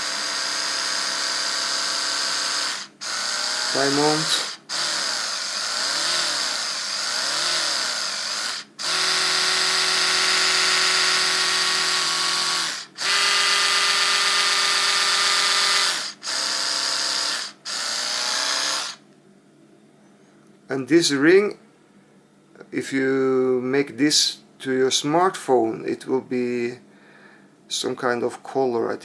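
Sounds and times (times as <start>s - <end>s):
electric toothbrush humming: 0.0s - 19.0s.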